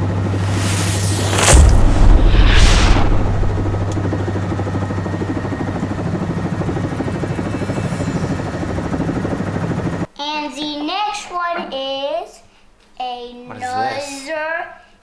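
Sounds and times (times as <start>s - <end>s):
helicopter rotor chop: 0.0s - 10.1s
helicopter whooshing pass: 0.0s - 10.1s.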